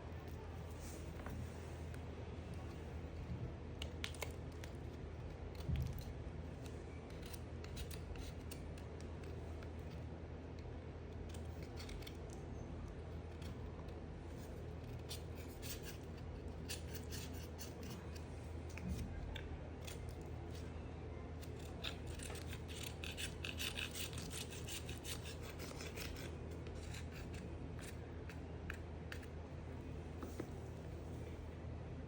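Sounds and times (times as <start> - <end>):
steady low hum: 0.0 - 32.0
knife cutting dry soap: 6.6 - 9.9, 14.8 - 18.9, 21.4 - 29.3.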